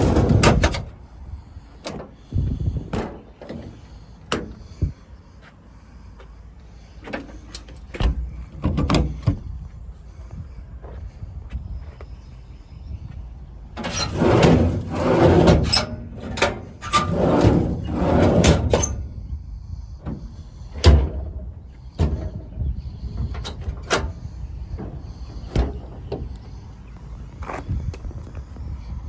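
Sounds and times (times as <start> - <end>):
metal door clunks and clicks: 0.0 - 1.0, 2.9 - 4.7, 7.0 - 9.5, 20.0 - 22.6, 23.2 - 24.2, 24.8 - 26.3
metal door sliding and scraping: 0.0 - 5.0, 13.7 - 26.7.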